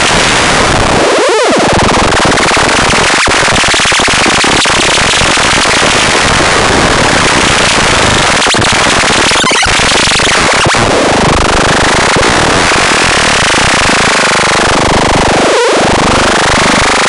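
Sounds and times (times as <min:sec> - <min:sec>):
harsh electronic buzz: 0:00.0 - 0:17.0.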